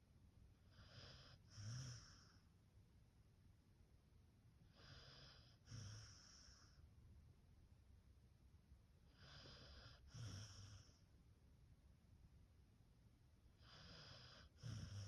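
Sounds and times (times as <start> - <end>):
dog snoring softly: 0.6 - 2.5, 4.6 - 6.9, 9.0 - 11.1, 13.5 - 15.0.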